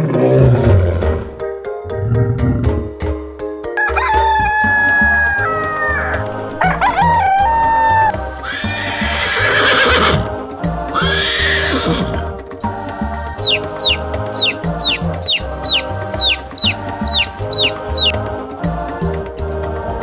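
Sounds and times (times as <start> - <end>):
background music: 0.0 - 20.0
rooster crowing: 3.8 - 10.2, 11.0 - 12.3, 13.4 - 18.2.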